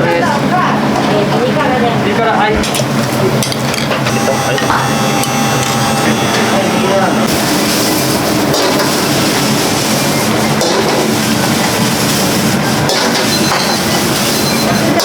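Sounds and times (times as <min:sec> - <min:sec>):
kitchen roar of burners and hood: 0:00.0 - 0:15.0
cookware clattering: 0:12.8 - 0:15.0.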